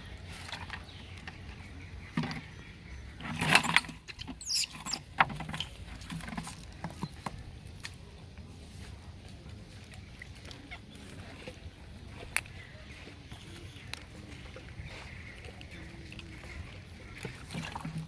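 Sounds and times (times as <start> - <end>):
monkey squealing: 4.4 - 5.0.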